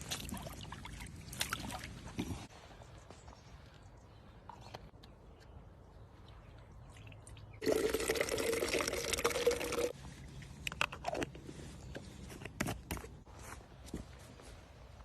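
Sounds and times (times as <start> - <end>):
liquid pouring in a stream: 7.6 - 10.0.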